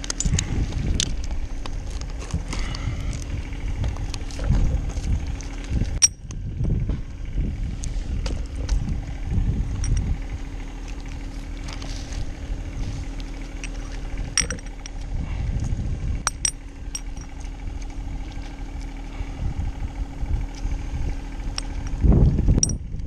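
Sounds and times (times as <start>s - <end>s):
engine hum: 0.0s - 23.0s
wind rumbling on microphone: 0.0s - 23.0s
metallic clinks of rigging: 13.5s - 15.0s, 16.2s - 18.0s.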